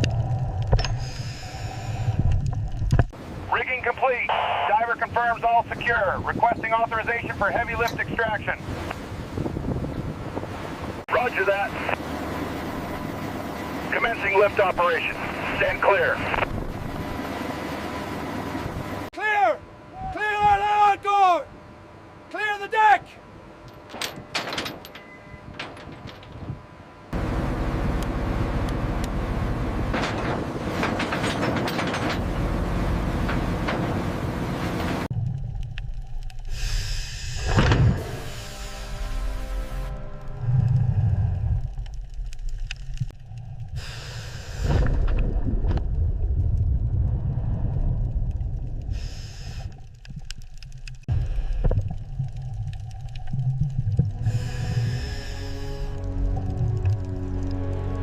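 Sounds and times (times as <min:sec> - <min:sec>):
loud steady mechanical rumble: 0:00.0 - 0:45.2, 0:48.3 - 0:58.0
metallic clanks and knocks: 0:23.8 - 0:26.4, 0:29.9 - 0:32.5
bursts of hiss: 0:36.5 - 0:39.1, 0:48.9 - 0:49.8.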